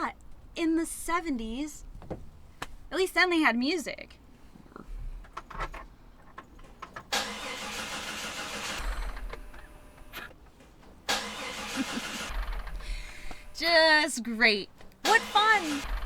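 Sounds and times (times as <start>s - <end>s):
engine cranking to start: 6.6s - 13.6s, 15.0s - 16.0s.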